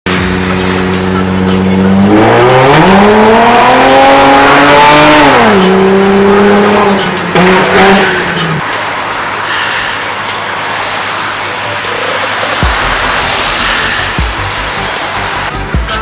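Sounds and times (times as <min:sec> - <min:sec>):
car engine revving: 0:00.1 - 0:16.0
tyre squeal: 0:06.8 - 0:14.8.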